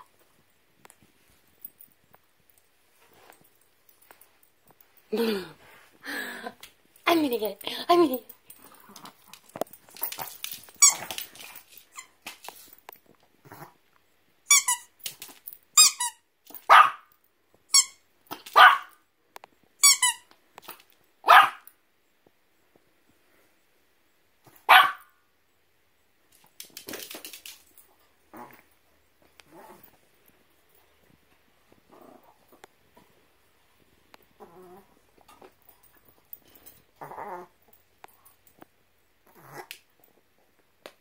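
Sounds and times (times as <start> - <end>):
dog barking sharply: 16.7 - 17.1, 18.5 - 18.9, 21.3 - 21.7, 24.7 - 25.1.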